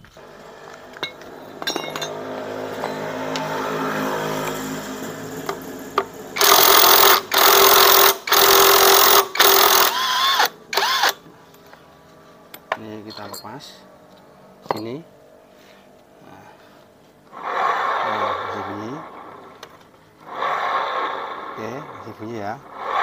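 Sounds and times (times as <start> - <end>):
whirring hum: 0.0 - 23.0
power tool bursts: 0.1 - 11.3, 17.3 - 23.0.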